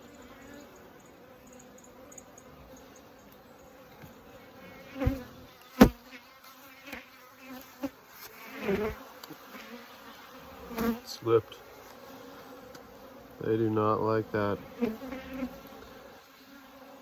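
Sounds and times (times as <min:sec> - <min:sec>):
bees buzzing: 0:00.0 - 0:17.0.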